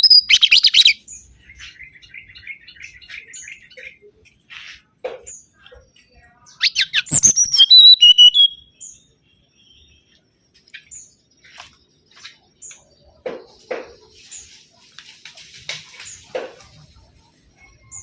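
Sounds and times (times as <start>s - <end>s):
bird singing falling whistles: 0.0s - 0.8s, 6.6s - 8.7s
faint chirps and ticks: 9.7s - 13.6s.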